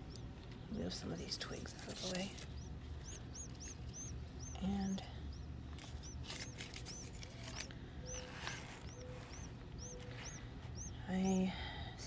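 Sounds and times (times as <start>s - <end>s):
hatchling bird peeping: 0.0s - 12.0s
twigs rustling: 5.6s - 10.4s.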